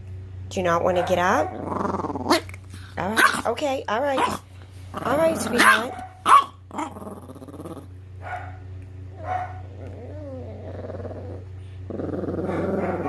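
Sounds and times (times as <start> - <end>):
steady low hum: 0.0 - 13.0
dog vocalizing: 9.2 - 13.0.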